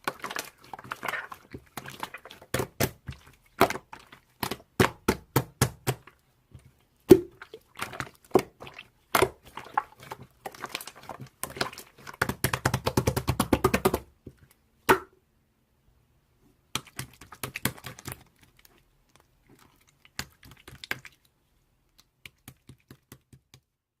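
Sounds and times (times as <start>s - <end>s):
slime crackling: 0.0s - 5.1s.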